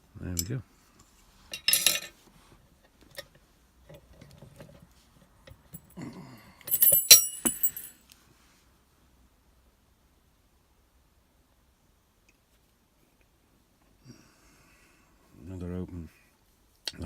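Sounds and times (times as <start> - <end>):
padlock and metal tools clinking: 1.6 - 2.1, 6.6 - 8.0.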